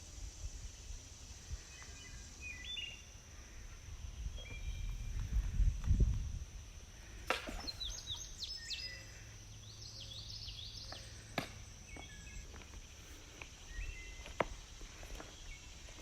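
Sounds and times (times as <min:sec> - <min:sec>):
high insect buzz: 0:00.0 - 0:16.0
birds chirping and whistling: 0:01.6 - 0:03.1, 0:04.3 - 0:05.3, 0:07.6 - 0:12.7, 0:13.6 - 0:16.0.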